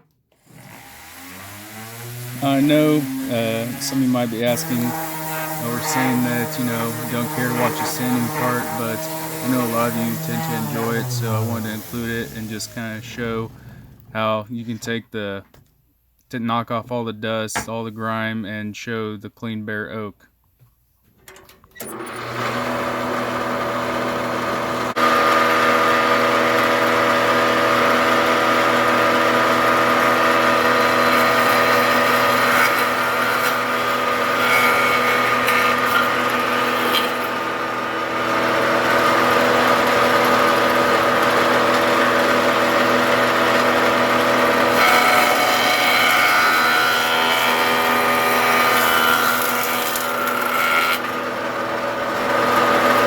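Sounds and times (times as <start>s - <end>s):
power sander on wood: 0.4s - 13.3s, 21.9s - 53.0s.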